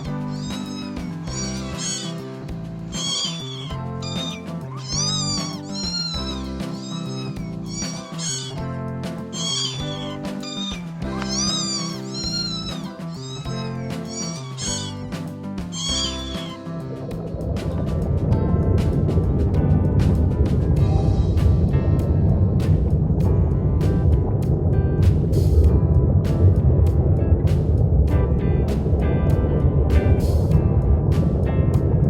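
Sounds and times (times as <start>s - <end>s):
cat meowing: 0.0s - 17.0s
background music: 0.0s - 32.0s.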